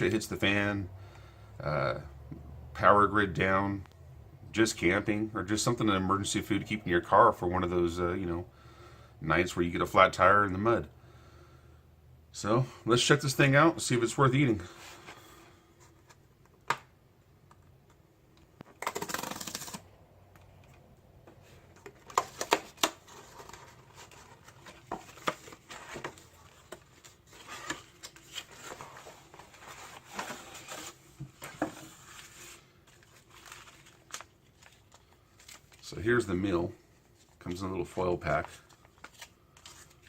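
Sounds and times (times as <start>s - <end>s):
cardboard and packaging rustling: 18.6s - 36.0s, 36.8s - 40.0s
cardboard tearing: 18.8s - 19.9s.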